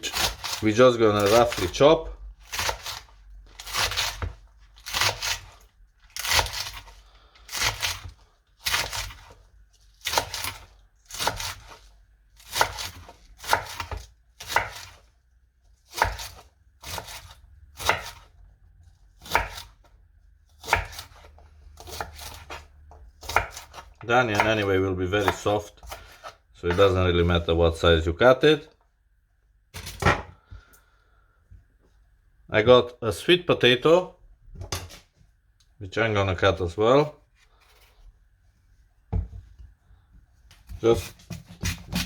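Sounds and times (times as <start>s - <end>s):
knife chopping spring onions: 0.0s - 1.8s, 2.4s - 6.9s, 7.5s - 9.4s, 10.0s - 15.1s, 15.9s - 18.4s, 19.2s - 19.9s, 20.6s - 27.0s, 40.7s - 42.0s.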